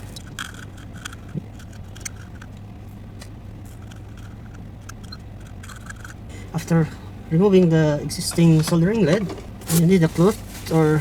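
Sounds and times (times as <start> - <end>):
small clicks and crackles: 0.0 - 6.3
steady low hum: 0.0 - 11.0.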